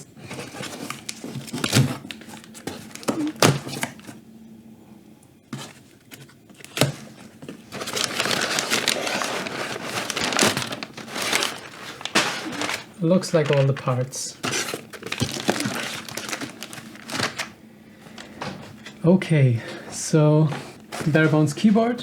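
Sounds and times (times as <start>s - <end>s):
packing material crinkling: 0.0s - 4.2s, 5.6s - 19.0s, 20.4s - 22.0s.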